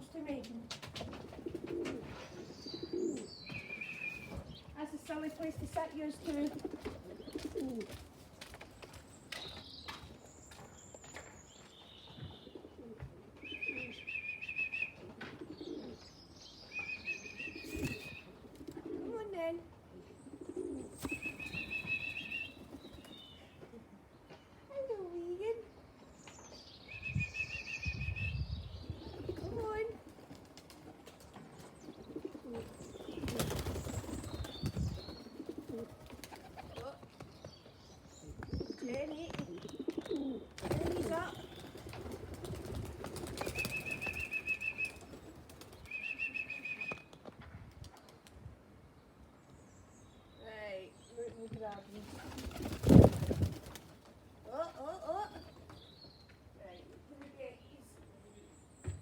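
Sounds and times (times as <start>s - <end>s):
pigeons cooing: 1.1s - 4.6s, 6.2s - 8.0s, 12.4s - 14.2s, 14.8s - 16.1s, 17.2s - 19.4s, 20.0s - 23.2s, 28.8s - 30.8s, 31.7s - 36.8s, 38.6s - 46.6s
small bird chirping: 20.3s - 23.6s.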